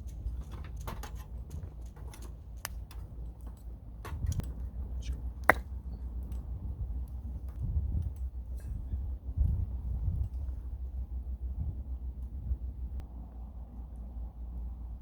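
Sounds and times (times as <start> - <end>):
small clicks and knocks: 0.0 - 4.6
low steady rumble: 0.0 - 15.0.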